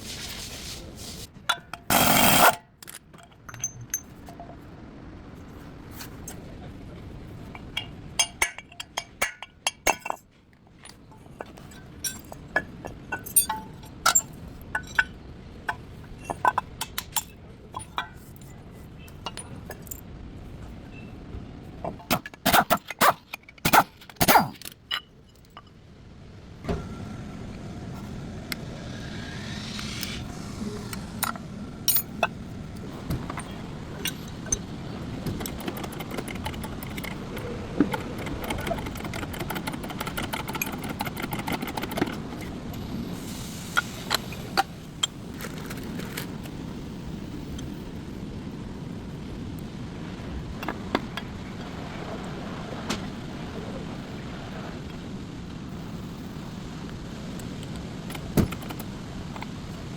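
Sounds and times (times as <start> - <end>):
metal tools clinking: 1.5 - 4.5, 7.4 - 15.2, 16.2 - 20.1, 22.0 - 25.8, 31.2 - 32.3, 33.2 - 42.5.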